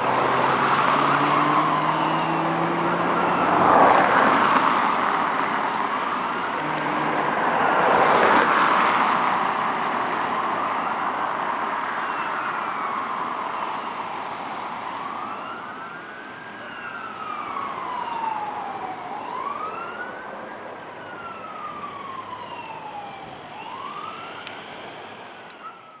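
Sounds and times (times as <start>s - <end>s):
vehicle passing close: 0.0s - 11.9s
fire engine siren wailing: 0.0s - 26.0s.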